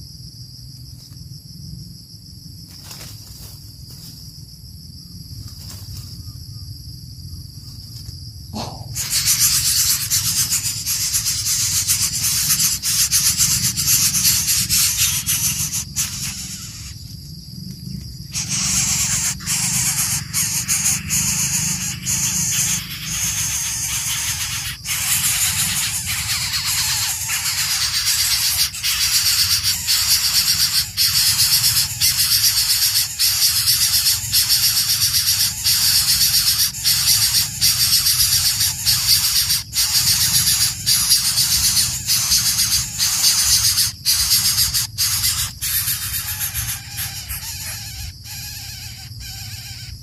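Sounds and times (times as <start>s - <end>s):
shrill insect chirring: 0.0s - 50.0s.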